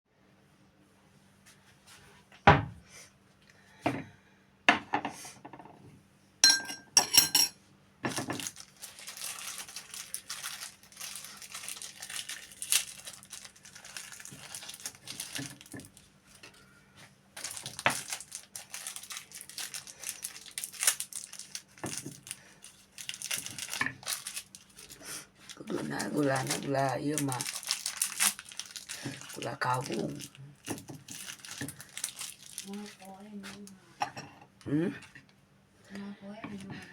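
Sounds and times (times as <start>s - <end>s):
dishes knocking: 6.4s - 7.5s
ringing clinks of dishes: 6.4s - 7.5s
plastic packaging crinkling: 8.1s - 16.6s, 17.4s - 33.7s.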